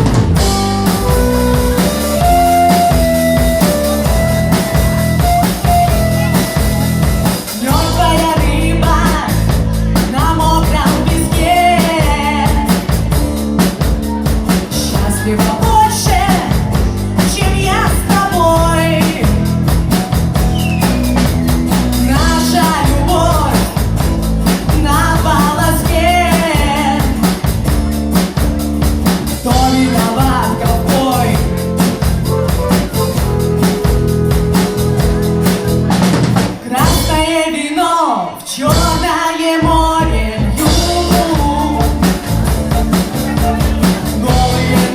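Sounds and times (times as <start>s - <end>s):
wavering lead melody: 0.0s - 8.1s
electric guitar: 0.0s - 37.2s, 40.1s - 44.9s
bass guitar: 0.0s - 37.6s, 38.6s - 44.9s
drum kit: 0.0s - 37.8s, 38.4s - 44.9s.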